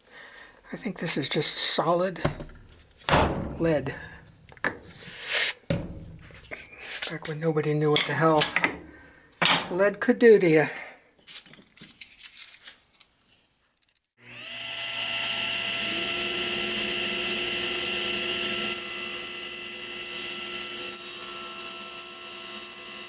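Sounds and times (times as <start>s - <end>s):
small power tool motor running: 14.2s - 23.0s.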